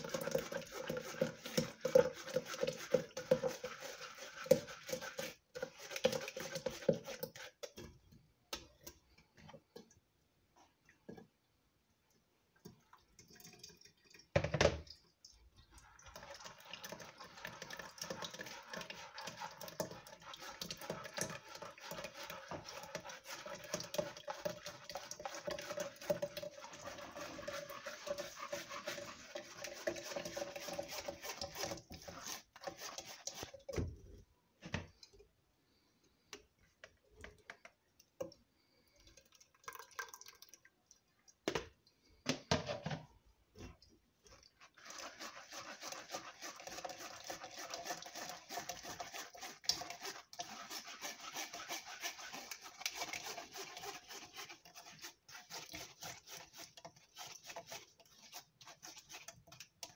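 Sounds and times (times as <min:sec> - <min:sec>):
juice pouring into container: 0:00.0 - 0:07.5, 0:12.6 - 0:33.8, 0:38.0 - 0:41.1, 0:44.3 - 0:59.9.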